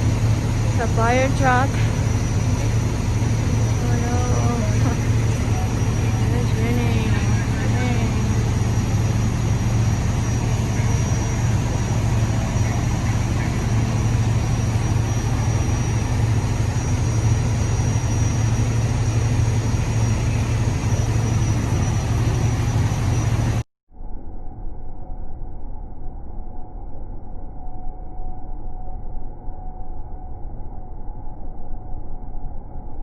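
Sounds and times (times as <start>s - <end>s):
fire truck engine idling: 0.0s - 23.6s.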